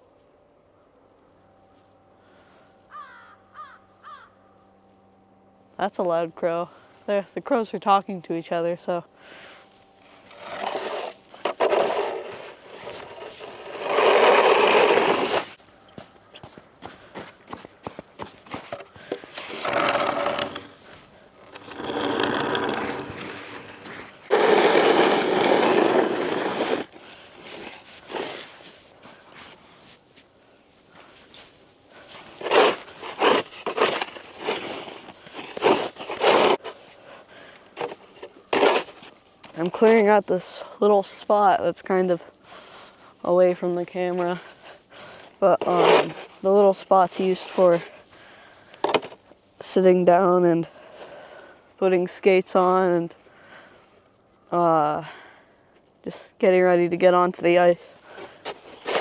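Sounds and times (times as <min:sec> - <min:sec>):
shovel scraping snow off ice: 0:09.4 - 0:15.6, 0:18.7 - 0:20.8, 0:21.4 - 0:29.6, 0:31.4 - 0:37.0, 0:37.8 - 0:39.1, 0:45.4 - 0:48.0, 0:58.1 - 0:59.0.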